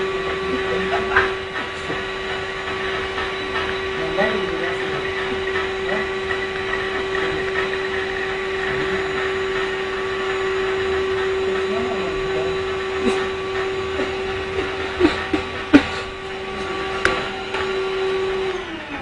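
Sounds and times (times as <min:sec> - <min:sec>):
vacuum cleaner running: 0:00.0 - 0:19.0.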